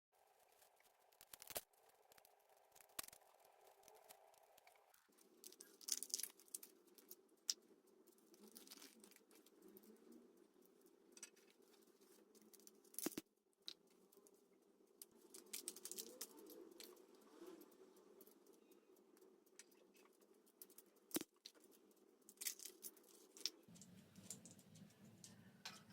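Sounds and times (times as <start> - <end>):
foil wrapper crinkling: 0.5 - 7.2.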